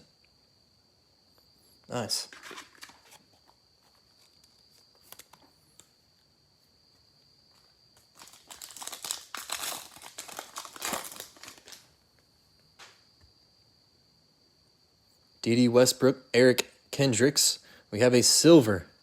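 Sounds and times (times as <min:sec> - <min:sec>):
foil wrapper crinkling: 0:08.0 - 0:12.0.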